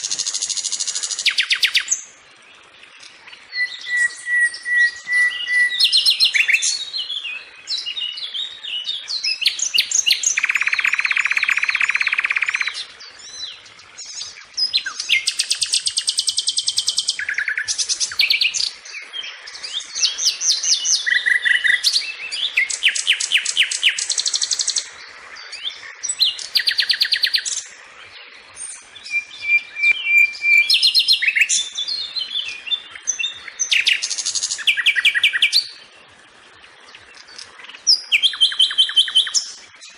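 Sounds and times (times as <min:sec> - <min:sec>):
flycatcher singing whistled notes: 0:00.0 - 0:02.1, 0:03.3 - 0:25.0, 0:25.6 - 0:27.7, 0:28.6 - 0:35.8, 0:37.2 - 0:39.9.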